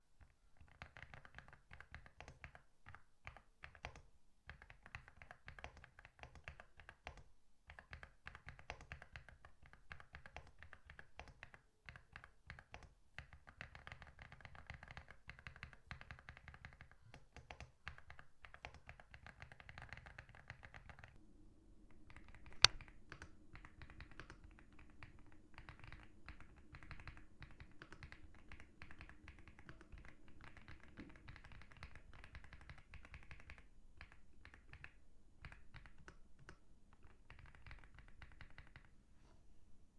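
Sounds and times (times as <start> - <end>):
mechanical keyboard typing: 0.6 - 21.2, 21.9 - 38.9
low hum: 21.2 - 39.9.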